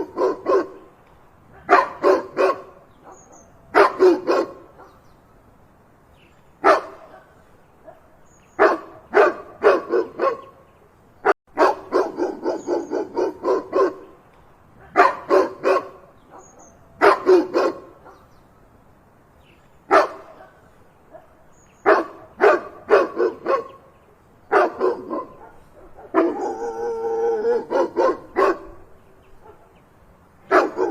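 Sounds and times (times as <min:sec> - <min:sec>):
dog barking loudly: 0:00.0 - 0:00.9, 0:01.5 - 0:05.0, 0:06.6 - 0:10.6, 0:11.2 - 0:14.2, 0:14.8 - 0:18.3, 0:19.9 - 0:23.9, 0:24.5 - 0:29.8, 0:30.5 - 0:30.9.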